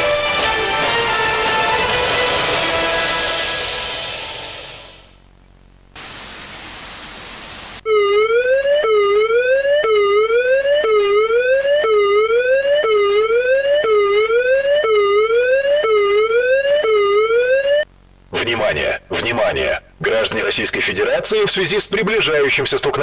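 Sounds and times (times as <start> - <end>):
music: 0.0 - 5.1
static hiss: 4.9 - 7.8
electronic warning siren: 6.0 - 17.9.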